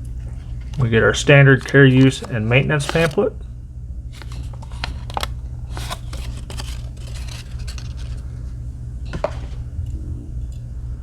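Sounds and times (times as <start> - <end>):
steady low hum: 0.0 - 11.0
paper and packaging rustling: 1.5 - 3.3, 4.1 - 8.6.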